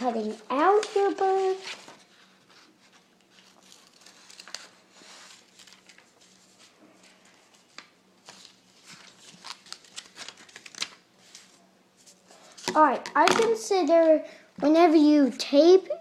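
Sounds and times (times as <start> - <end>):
paper being handled: 0.0 - 12.7.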